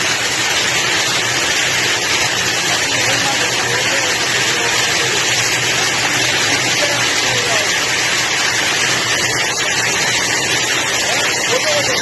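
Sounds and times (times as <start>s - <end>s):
rushing water: 0.0s - 12.0s
faint voices: 2.5s - 12.0s.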